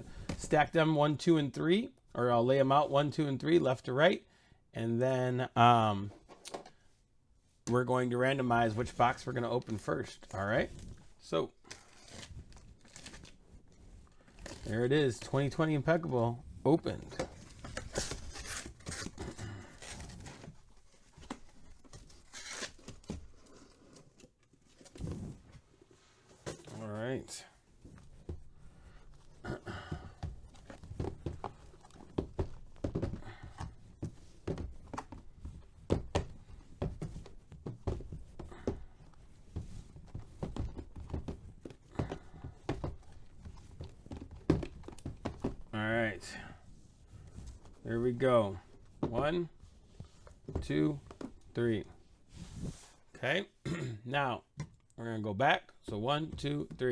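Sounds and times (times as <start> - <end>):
cardboard rustling: 8.5 - 53.2
cardboard scraping: 8.6 - 53.1.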